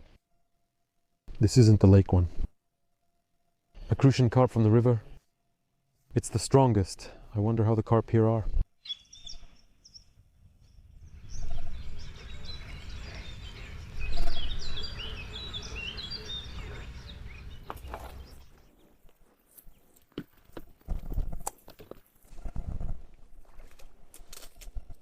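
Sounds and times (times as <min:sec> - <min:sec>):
songbird chirping: 0:08.8 - 0:20.6.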